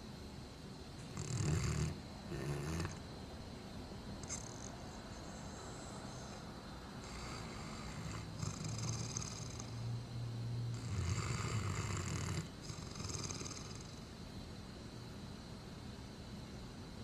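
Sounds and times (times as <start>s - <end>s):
dog snoring: 1.0s - 3.0s, 4.2s - 6.4s, 7.0s - 9.9s, 10.7s - 14.1s
dog breathing: 4.2s - 9.8s.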